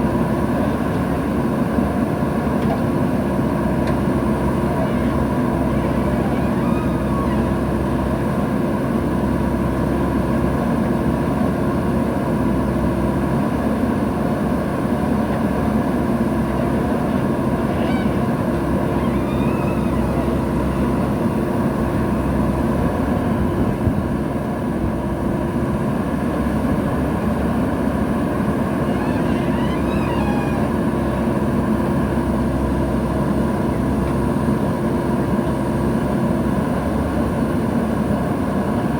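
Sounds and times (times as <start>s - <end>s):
diesel engine droning: 0.0s - 38.9s
steady whine: 3.8s - 9.0s, 15.0s - 23.8s.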